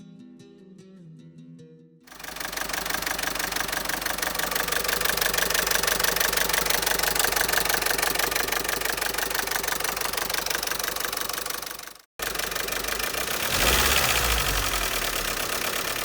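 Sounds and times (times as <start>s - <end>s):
petrol engine idling with ticking clatter: 2.1s - 16.0s.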